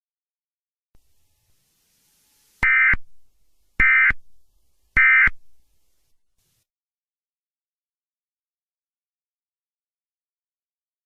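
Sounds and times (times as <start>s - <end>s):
harsh electronic buzzes: 1.0s - 4.3s, 4.9s - 5.6s.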